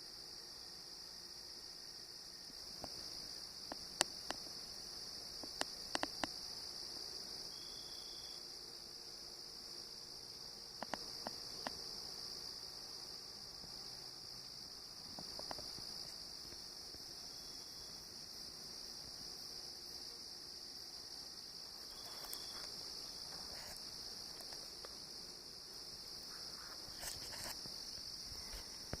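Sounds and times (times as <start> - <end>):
insects droning: 0.0 - 29.0
faint rustles: 26.2 - 29.0.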